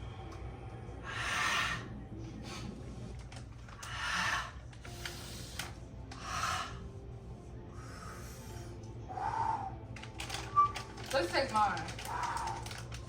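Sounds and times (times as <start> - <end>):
low steady hum: 0.0 - 13.0
person breathing heavily: 0.9 - 3.2, 3.8 - 10.0.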